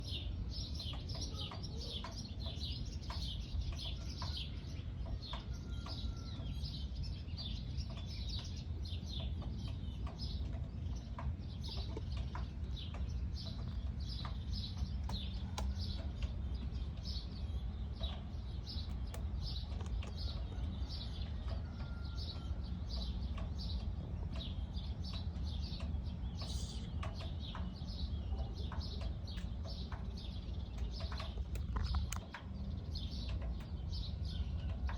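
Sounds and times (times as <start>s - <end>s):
small birds chirping: 0.0s - 34.9s
steady low hum: 22.8s - 34.4s.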